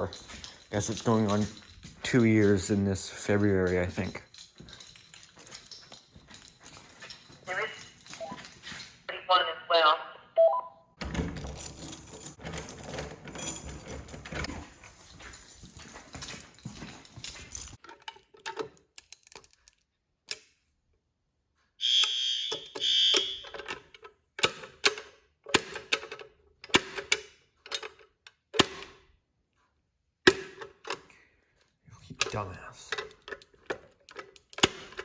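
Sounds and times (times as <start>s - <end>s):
fire alarm horn blasts: 21.8s - 23.5s.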